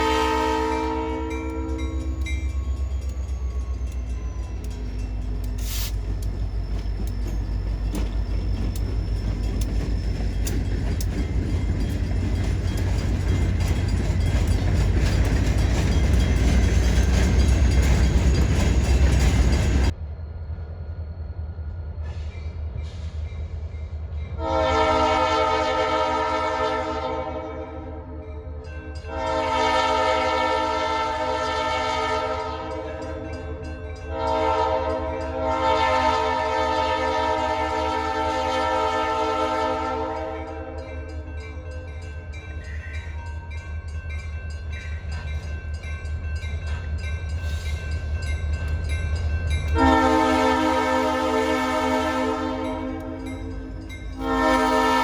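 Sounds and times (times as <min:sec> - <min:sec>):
locomotive air horn blasts: 0:00.0 - 0:02.2, 0:24.4 - 0:28.1, 0:29.1 - 0:32.9, 0:34.1 - 0:40.9, 0:49.8 - 0:55.0
freight train rumbling past: 0:00.0 - 0:55.0.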